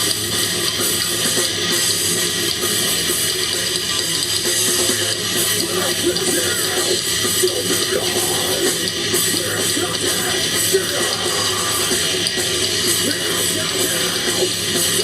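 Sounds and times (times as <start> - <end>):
electric guitar: 0.0 - 15.0
live rock band playing: 0.0 - 15.0.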